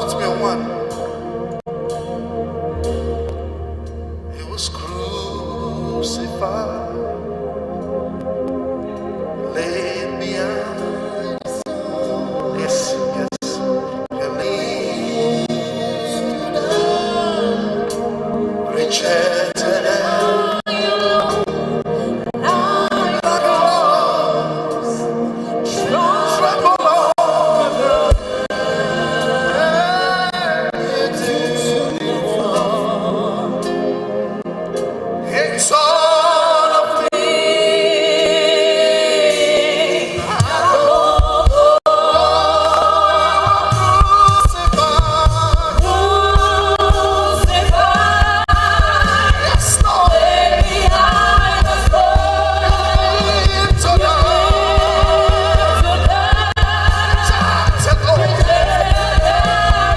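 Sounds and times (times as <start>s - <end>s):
gospel voices singing: 0.0s - 59.9s
sustained musical accompaniment: 0.0s - 59.9s
low bass line: 1.8s - 7.5s, 43.7s - 59.9s
regular beat: 27.9s - 28.4s, 40.2s - 41.8s, 43.6s - 59.9s.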